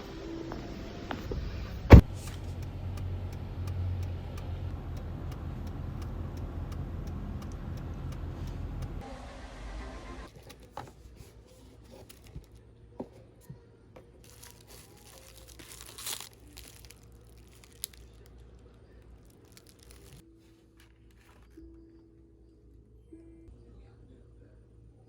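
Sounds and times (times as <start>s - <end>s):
low steady hum: 0.0s - 25.0s
rustling and crinkling: 10.3s - 21.7s.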